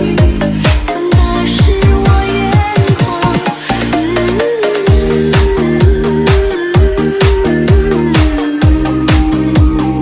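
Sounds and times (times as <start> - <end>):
kick drum: 0.0 - 3.5, 4.9 - 10.0
hi-hats: 0.0 - 10.0.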